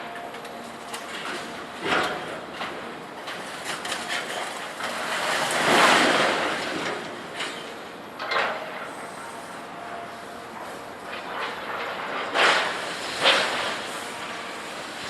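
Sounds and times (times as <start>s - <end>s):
scrap metal banging and clanking: 11.1s - 14.7s.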